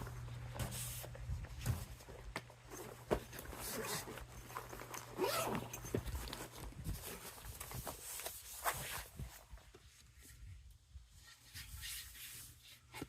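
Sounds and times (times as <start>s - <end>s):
zipper rasping: 2.7s - 7.3s.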